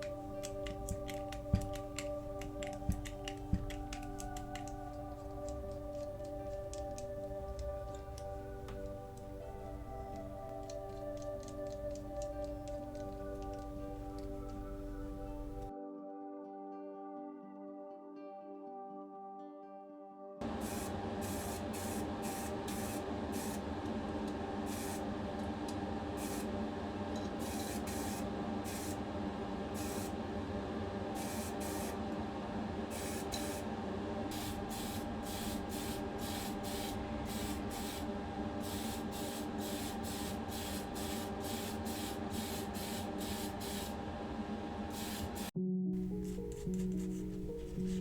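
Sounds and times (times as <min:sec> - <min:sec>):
steady hum: 0:00.0 - 0:15.7
short bursts of spray paint hiss: 0:20.6 - 0:23.6, 0:27.4 - 0:29.0, 0:34.3 - 0:38.0, 0:38.6 - 0:44.0, 0:44.9 - 0:45.5.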